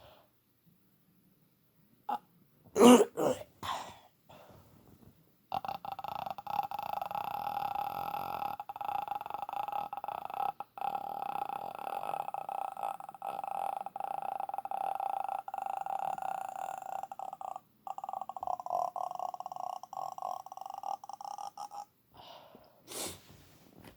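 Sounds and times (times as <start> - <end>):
man imitating croaking throat rattle: 2.1 - 3.4, 5.5 - 22.0.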